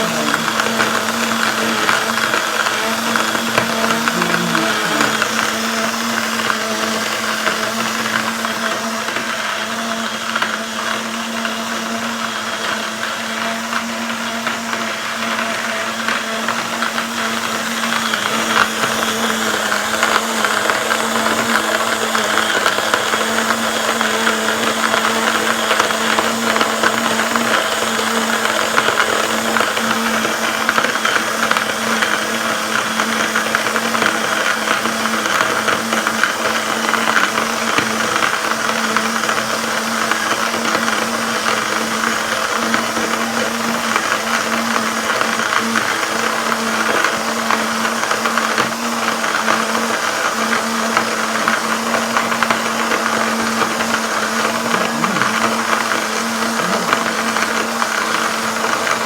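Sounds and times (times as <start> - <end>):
electric coffee grinder grinding: 0.0 - 59.0.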